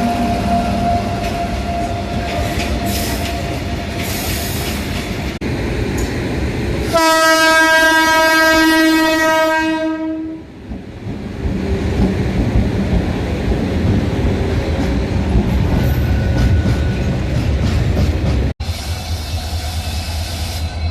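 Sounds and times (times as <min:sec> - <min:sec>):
train rumble: 0:00.0 - 0:20.9
locomotive horn blast: 0:06.9 - 0:10.5
train wheel clatter: 0:10.6 - 0:18.5.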